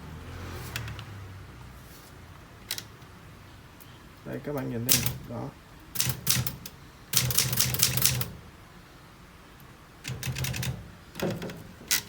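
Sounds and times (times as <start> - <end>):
typewriter keys clacking: 4.9 - 5.2, 6.0 - 8.3, 10.1 - 10.8.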